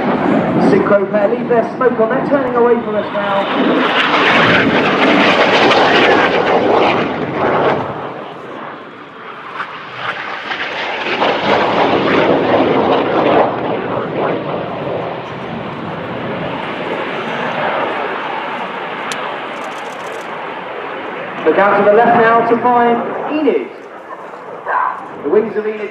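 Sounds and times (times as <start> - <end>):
jets flying past: 0.0 - 25.9.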